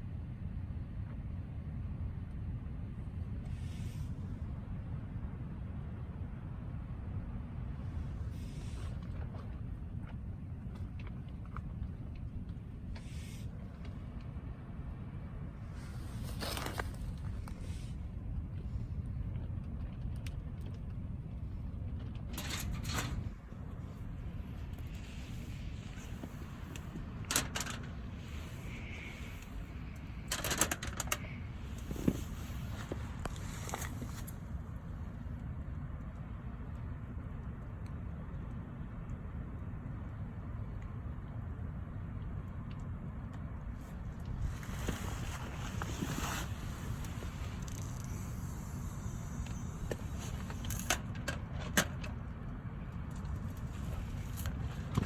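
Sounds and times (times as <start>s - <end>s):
steady low rumble: 0.0s - 55.0s
light clicking and rattling: 22.0s - 34.4s.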